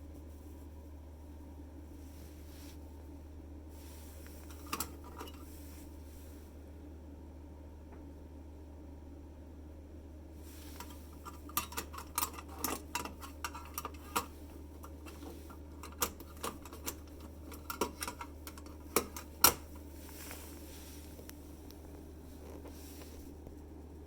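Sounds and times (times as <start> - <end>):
hard parts clicking and knocking: 4.4 - 5.4, 10.8 - 19.9.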